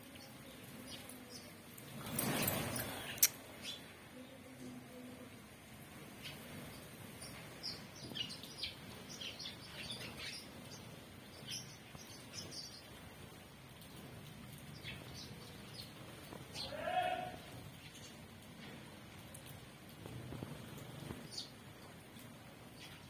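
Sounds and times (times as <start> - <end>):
small bird chirping: 6.1 - 13.4.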